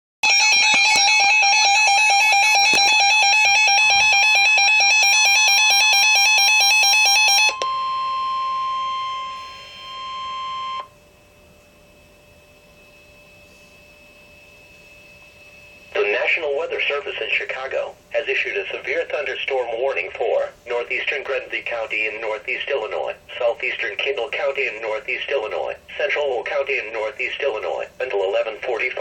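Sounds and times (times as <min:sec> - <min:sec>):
warbling electronic alarm: 0:00.2 - 0:17.2
steady alarm tone: 0:00.2 - 0:17.7.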